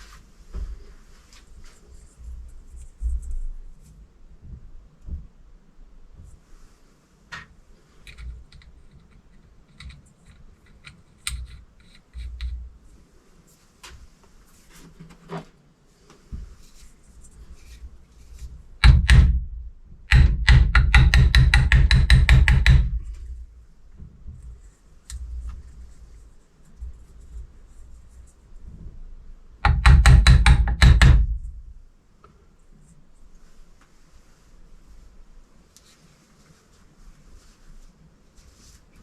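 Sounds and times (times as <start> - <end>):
hard knocking: 18.8 - 23.2, 29.7 - 31.6.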